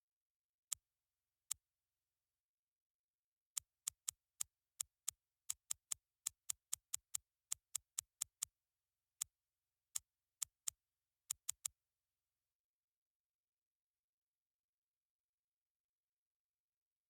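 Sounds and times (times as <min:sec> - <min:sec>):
sharp electronic clicks: 0:03.6 - 0:08.6, 0:09.2 - 0:11.8.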